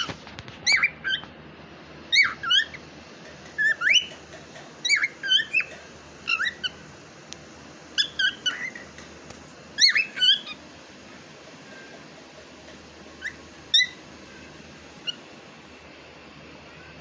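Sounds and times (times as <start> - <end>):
cockatiel whistling and chirping: 0.0 - 1.3, 2.1 - 2.8, 3.6 - 4.2, 4.8 - 6.8, 8.0 - 8.8, 9.8 - 10.6, 13.2 - 14.0, 15.0 - 15.2.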